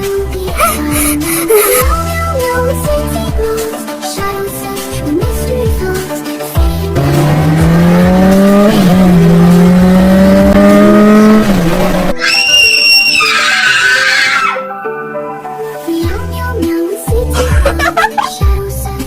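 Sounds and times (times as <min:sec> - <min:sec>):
background music: 0:00.0 - 0:19.0
car engine revving: 0:06.6 - 0:12.2
tyre screech: 0:12.2 - 0:14.6.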